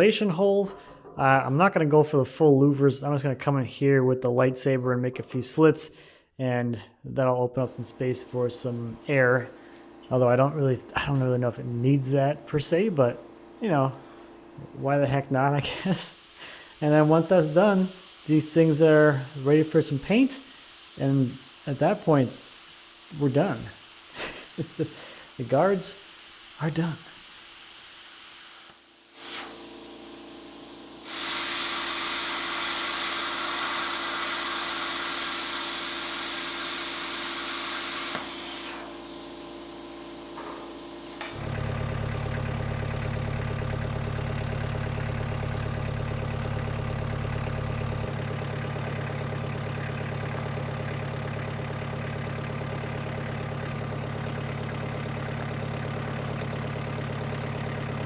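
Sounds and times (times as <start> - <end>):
planer motor humming: 7.6 - 27.3, 28.4 - 58.0
aerosol spray can hissing: 15.5 - 58.0.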